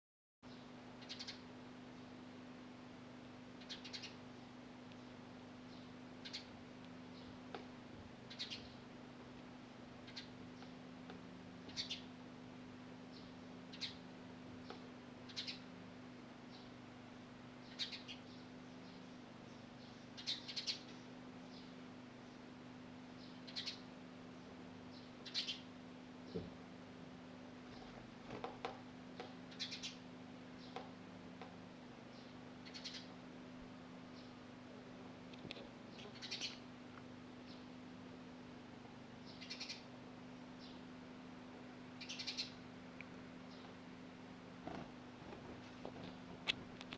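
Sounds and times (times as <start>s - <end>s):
steady low hum: 0.4s - 46.9s
small bird chirping: 0.5s - 2.1s, 3.6s - 4.3s, 5.0s - 7.5s, 8.2s - 8.9s, 10.0s - 10.9s, 11.6s - 12.2s, 13.0s - 15.8s, 16.4s - 16.8s, 17.6s - 26.6s, 29.2s - 33.3s, 34.0s - 34.5s, 35.6s - 36.7s, 37.4s - 37.8s, 39.2s - 41.0s, 41.9s - 43.8s.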